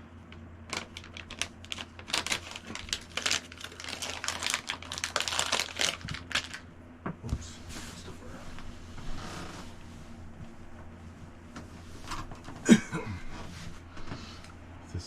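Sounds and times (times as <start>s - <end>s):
plastic packaging clicking and crinkling: 0.3s - 6.6s.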